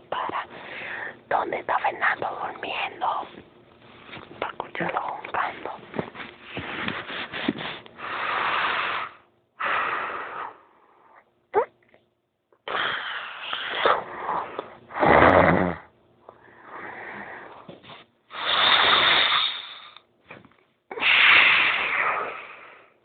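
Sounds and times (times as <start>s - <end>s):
person snoring: 12.7s - 15.9s.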